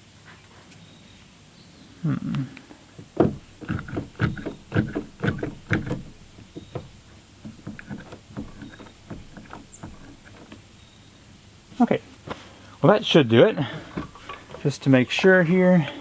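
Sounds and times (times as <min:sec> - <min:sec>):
wooden boards knocking: 0:03.0 - 0:10.7.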